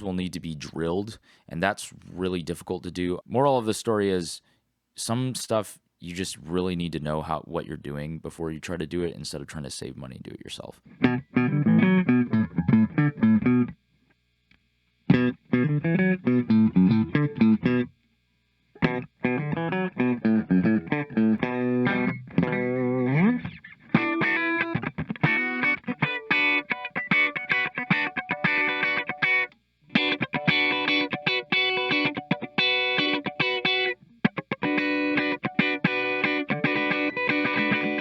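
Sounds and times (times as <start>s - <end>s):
clean electric guitar playing: 10.9s - 13.8s, 15.1s - 17.9s, 18.8s - 38.0s
sliding guitar note: 18.8s - 38.0s.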